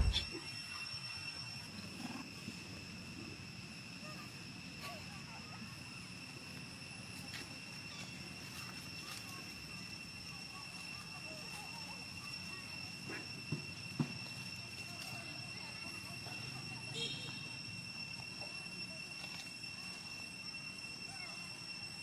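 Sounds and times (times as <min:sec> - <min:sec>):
high-pitched insect drone: 0:00.0 - 0:22.0.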